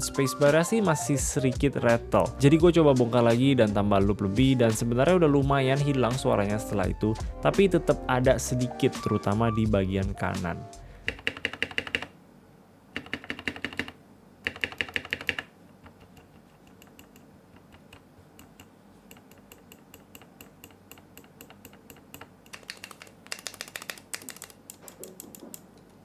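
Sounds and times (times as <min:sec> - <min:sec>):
mechanical keyboard keys clicking: 0:13.0 - 0:25.8.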